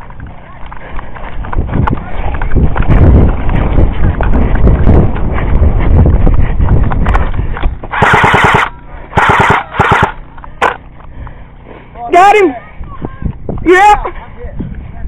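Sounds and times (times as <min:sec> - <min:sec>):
airsoft gun full-auto bursts: 0:07.9 - 0:10.2.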